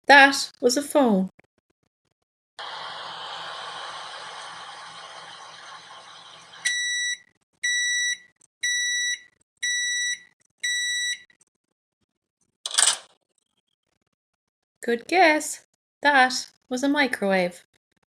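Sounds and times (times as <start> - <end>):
microwave oven humming: 2.6 - 7.0
microwave beeps: 5.0 - 11.2.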